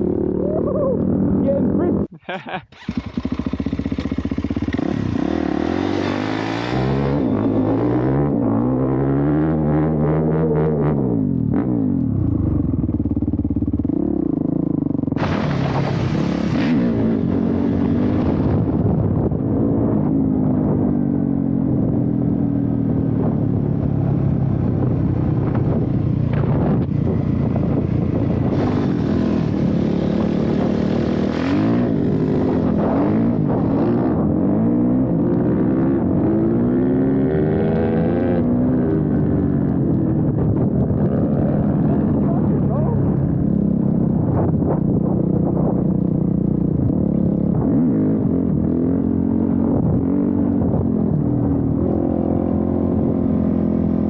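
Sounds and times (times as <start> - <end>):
dirt bike engine revving: 0.0 - 11.0, 28.4 - 38.7.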